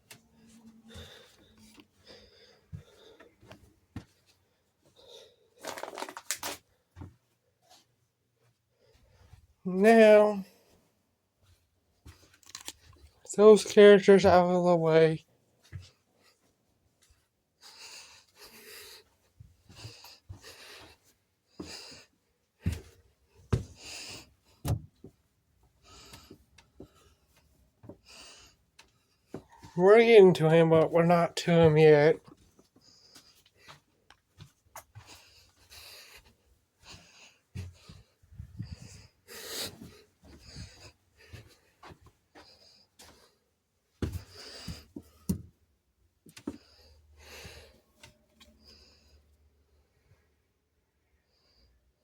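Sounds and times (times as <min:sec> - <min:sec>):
breathy rustling: 0:00.1 - 0:07.1, 0:32.2 - 0:45.3
rustling of handled toys: 0:03.3 - 0:07.9, 0:11.5 - 0:13.8.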